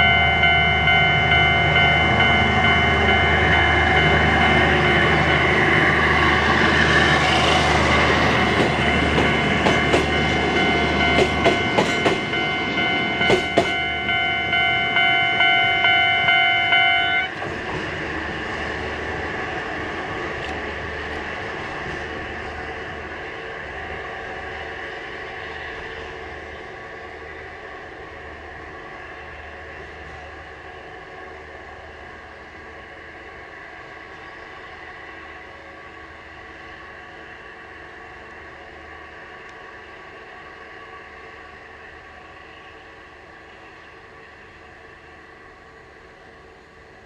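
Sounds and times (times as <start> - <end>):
ringing warning tone: 0.0 - 17.4.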